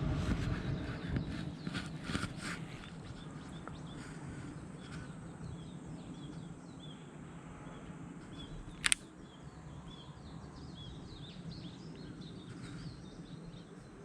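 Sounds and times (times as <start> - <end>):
low outdoor background noise: 0.0 - 14.0
small birds chirping: 0.4 - 14.0
sharp double click: 8.7 - 9.1.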